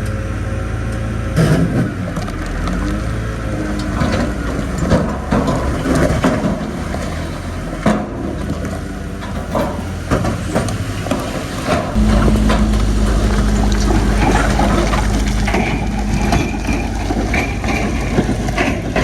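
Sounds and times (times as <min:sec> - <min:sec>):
bulldozer engine running: 0:12.0 - 0:19.0
clanks of rock and steel tracks: 0:12.0 - 0:19.0.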